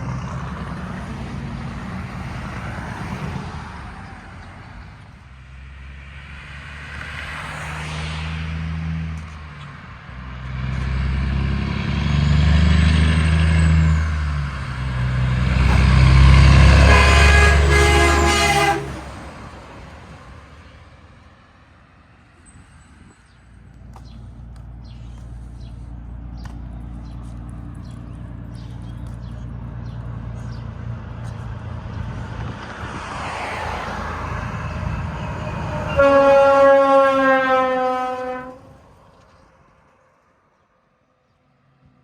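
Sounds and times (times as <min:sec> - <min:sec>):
locomotive engine rumble: 0:09.1 - 0:20.9, 0:23.4 - 0:39.6
train horn blast: 0:15.4 - 0:19.3, 0:34.5 - 0:38.8.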